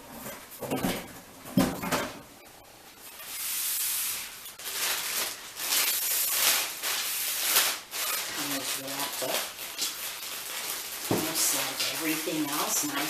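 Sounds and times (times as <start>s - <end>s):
cardboard packaging rustling: 3.2s - 13.0s.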